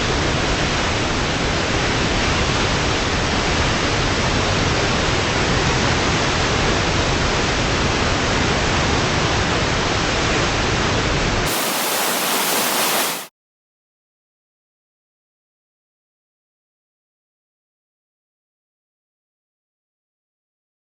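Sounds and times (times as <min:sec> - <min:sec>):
water roaring over spillway: 0:11.5 - 0:13.3.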